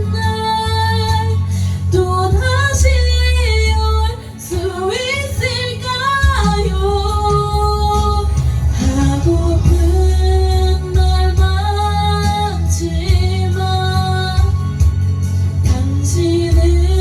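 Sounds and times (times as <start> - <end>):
woman singing: 0.0 - 15.0, 15.6 - 17.0
karaoke backing track: 0.0 - 17.0.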